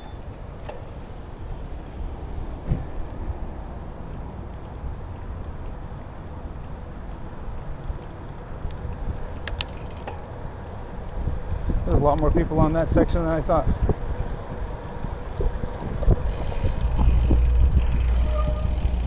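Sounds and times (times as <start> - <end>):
moving bicycle rumble: 0.0 - 19.0
sharp clicks: 9.4 - 10.2
wind rush on microphone: 10.4 - 19.0.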